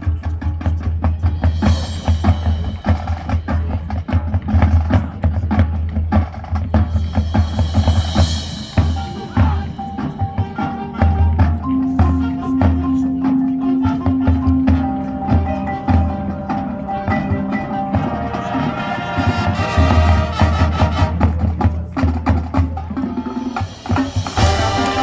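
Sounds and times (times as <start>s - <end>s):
mallet keyboards: 6.7s - 25.0s.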